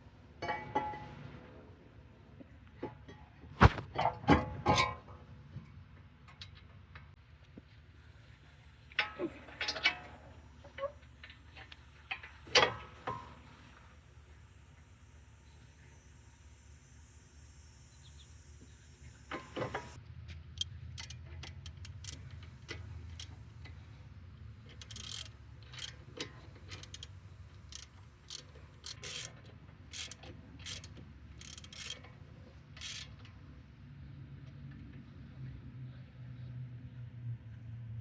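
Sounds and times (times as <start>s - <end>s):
irregular metallic clicks: 20.5s - 23.4s, 24.7s - 32.1s, 32.8s - 33.3s
ratchet strokes: 20.6s - 22.4s, 24.8s - 32.1s, 32.8s - 33.2s.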